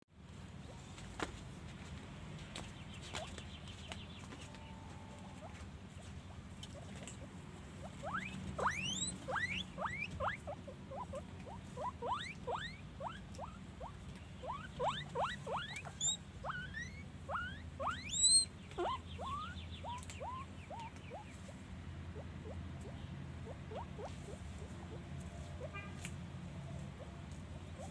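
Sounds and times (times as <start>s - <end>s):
guinea pig squealing: 6.8s - 25.0s, 27.7s - 27.9s.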